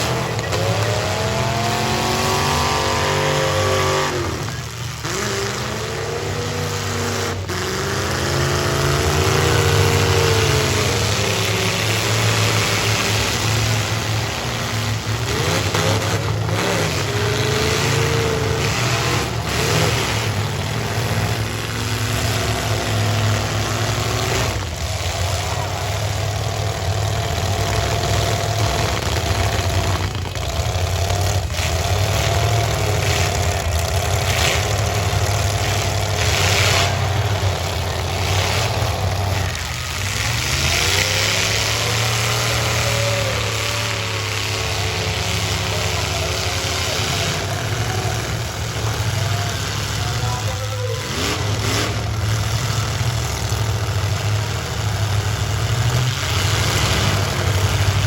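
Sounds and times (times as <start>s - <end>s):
car engines revving: 0.0s - 58.0s.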